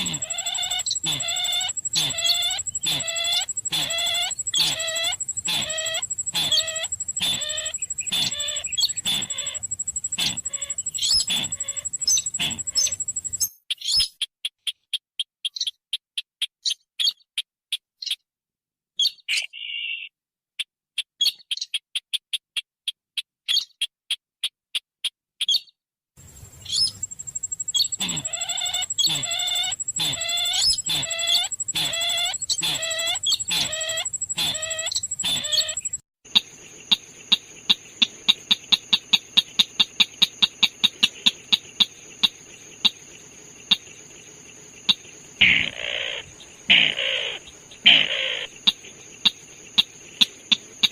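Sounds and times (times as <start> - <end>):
steady hum: 0.0 - 13.4, 26.2 - 36.0
constant high whine: 0.0 - 13.5, 26.2 - 50.9
quick ticking bird notes: 0.0 - 18.2, 20.6 - 50.9
short sharp bird chirps: 0.0 - 18.2, 26.4 - 36.0.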